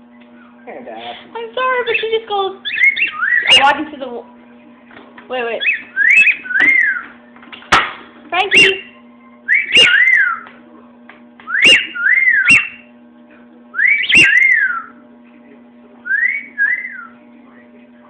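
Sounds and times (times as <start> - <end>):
person whistling: 16.1 - 17.1.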